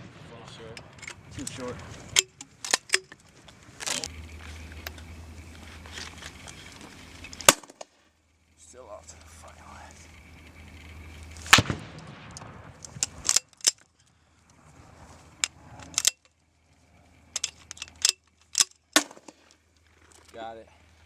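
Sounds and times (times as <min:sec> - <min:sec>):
explosions bursting: 0:00.0 - 0:00.8, 0:11.5 - 0:13.0
grenade launcher firing: 0:11.5 - 0:13.4.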